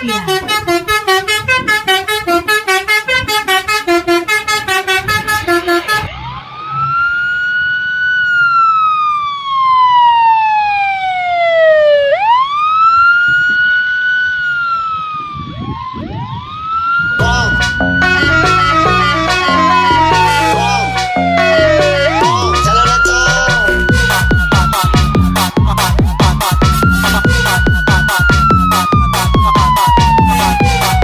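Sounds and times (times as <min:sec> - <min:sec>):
multi-tone air horn tune: 0:00.0 - 0:06.2, 0:17.2 - 0:28.0
wailing siren: 0:00.0 - 0:31.0.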